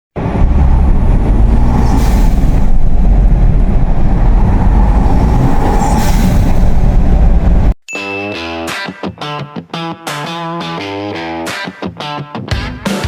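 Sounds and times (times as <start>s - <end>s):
engine running loud: 0.2s - 7.8s.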